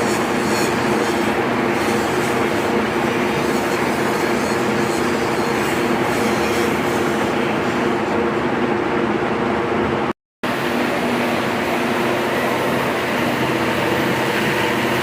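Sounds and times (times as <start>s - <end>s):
angle grinder grinding steel: 0.0s - 8.1s.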